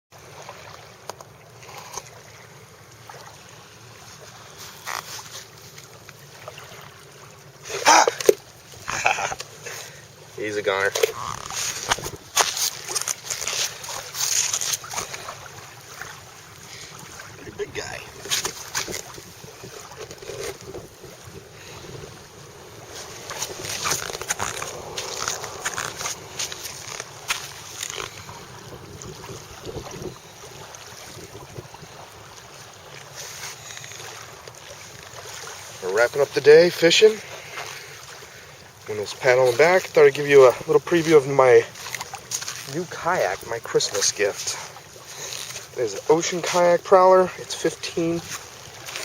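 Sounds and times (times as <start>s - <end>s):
water lapping around kayak: 0.1s - 49.0s
wind buffeting microphone: 11.1s - 12.4s, 16.0s - 33.0s.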